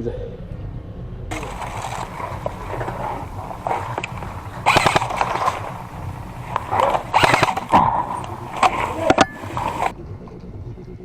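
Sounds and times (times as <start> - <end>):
airsoft rifles firing bursts: 1.3 - 9.9.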